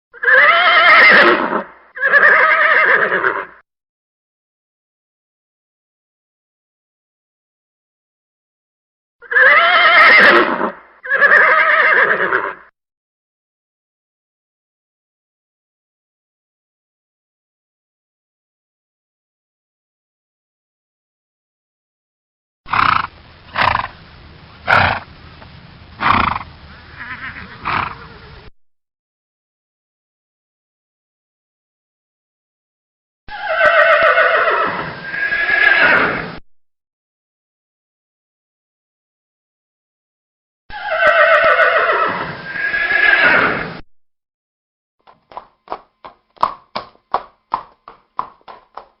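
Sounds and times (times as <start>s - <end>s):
horse whinnying: 0.2s - 3.6s, 9.2s - 12.7s, 22.7s - 23.9s, 24.7s - 25.0s, 26.0s - 28.5s, 33.3s - 36.3s, 40.7s - 43.8s
horse snorting: 22.7s - 24.0s, 24.6s - 25.1s, 26.0s - 28.5s
hooves clip-clopping: 45.0s - 49.0s.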